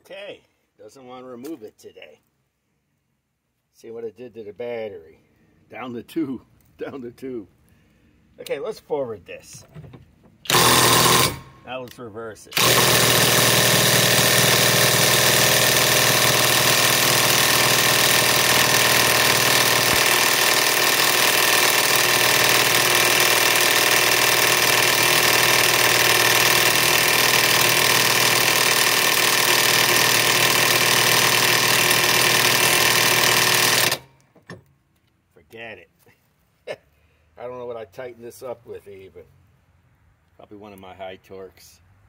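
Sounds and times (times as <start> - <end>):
impact wrench hammering: 10.5 - 11.7, 12.6 - 34.6.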